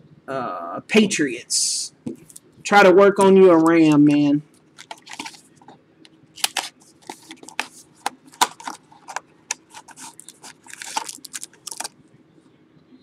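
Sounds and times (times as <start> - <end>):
foil wrappers crinkling: 4.8 - 5.7, 6.4 - 12.0
cards being flicked through: 6.4 - 11.9.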